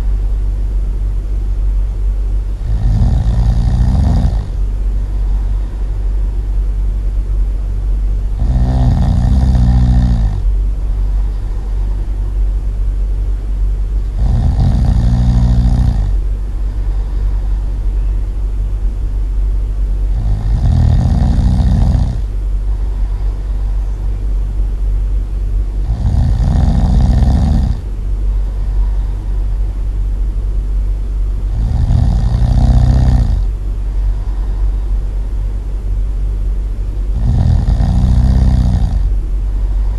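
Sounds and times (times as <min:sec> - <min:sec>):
steady low rumble: 0:00.0 - 0:39.9
loud snoring: 0:02.6 - 0:05.8, 0:08.3 - 0:10.5, 0:14.0 - 0:17.7, 0:20.1 - 0:23.9, 0:25.8 - 0:29.4, 0:31.5 - 0:33.6, 0:37.1 - 0:39.2.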